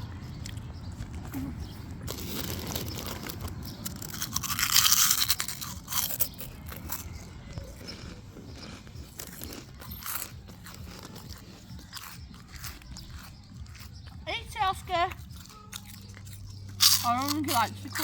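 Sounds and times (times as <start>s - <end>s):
crisps crunching and crackling: 0.0s - 18.0s
packet crinkle: 2.0s - 7.1s, 15.2s - 18.0s.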